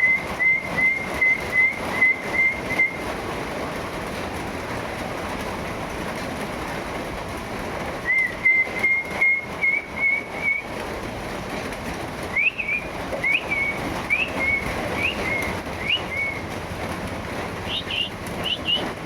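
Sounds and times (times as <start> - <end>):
rain hiss: 0.0 - 19.0
high whistled notes: 12.4 - 16.4, 17.7 - 18.9.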